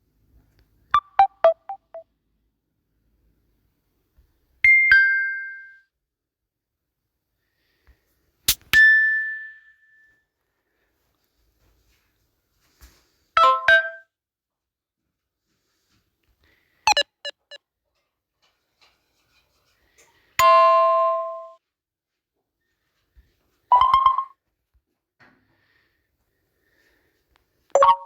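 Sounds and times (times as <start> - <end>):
phone tone samples: 1.0 - 2.0, 16.9 - 17.6, 27.8 - 28.0.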